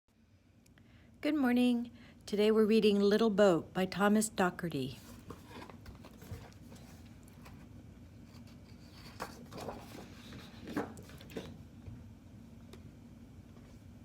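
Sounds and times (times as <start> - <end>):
paper rustling: 5.0 - 11.6.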